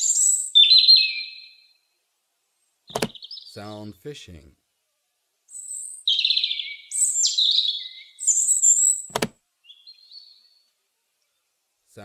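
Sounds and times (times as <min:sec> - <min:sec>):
faint chirps: 0:00.0 - 0:02.0, 0:05.5 - 0:12.0
robin singing: 0:00.0 - 0:02.0, 0:02.6 - 0:04.0, 0:05.5 - 0:11.6
sharp click: 0:02.9 - 0:03.2, 0:09.1 - 0:09.4.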